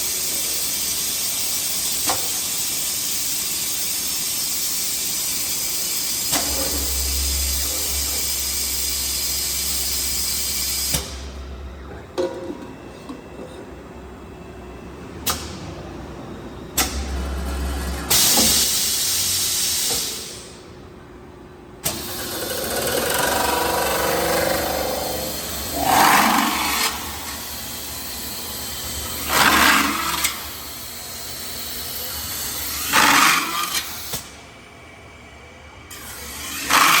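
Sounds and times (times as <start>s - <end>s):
lathe machine running: 22.0s - 33.1s
sharp surges of machine noise: 22.0s - 34.2s.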